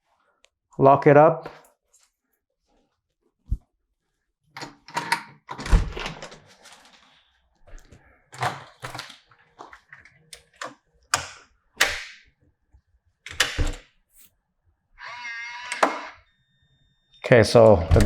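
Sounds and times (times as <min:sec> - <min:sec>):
key and deadbolt clicking: 0:10.4 - 0:12.2, 0:13.3 - 0:13.8.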